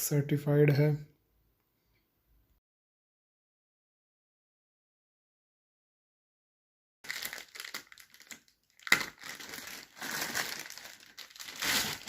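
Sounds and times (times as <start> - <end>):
plastic packaging crinkling: 7.0 - 12.0.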